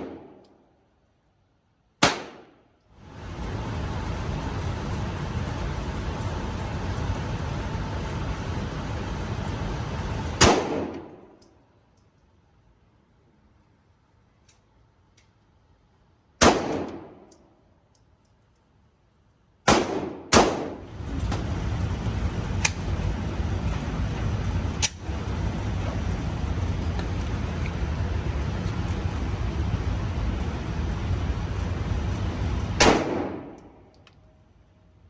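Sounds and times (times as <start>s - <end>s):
pistol shots: 0.0s - 0.4s, 2.0s - 2.6s, 10.4s - 11.3s, 16.4s - 17.3s, 19.7s - 20.8s, 32.8s - 33.9s
low rushing noise: 3.0s - 11.4s, 20.7s - 35.0s.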